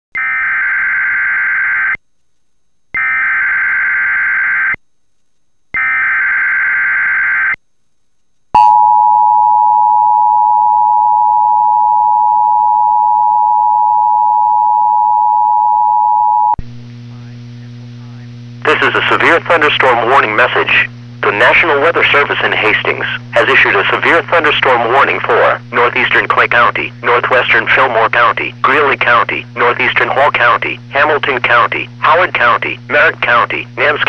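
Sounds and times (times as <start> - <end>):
low hum: 8.6 - 34.0.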